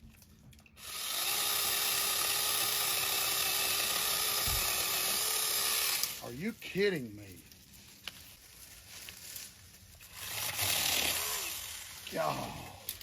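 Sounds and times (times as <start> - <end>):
mini chainsaw whirring: 0.8 - 6.2, 10.1 - 13.0.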